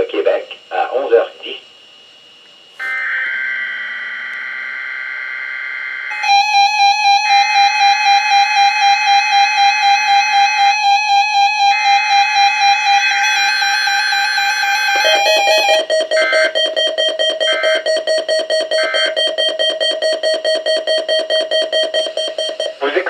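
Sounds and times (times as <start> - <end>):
two-tone data screech: 2.8 - 7.7, 12.4 - 16.8
pulsing alarm beep: 2.8 - 22.9.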